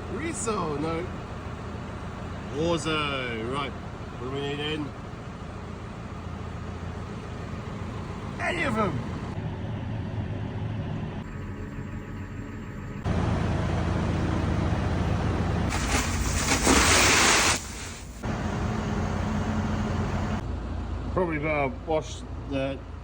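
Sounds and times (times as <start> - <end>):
tractor engine running: 0.0 - 16.6, 17.6 - 23.0
loud rushing hiss: 15.7 - 18.2.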